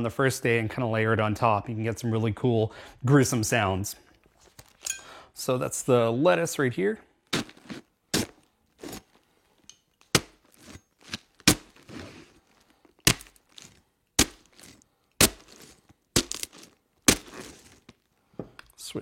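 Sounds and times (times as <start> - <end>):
knife stabbing into lettuce: 7.3 - 9.2, 10.1 - 17.9.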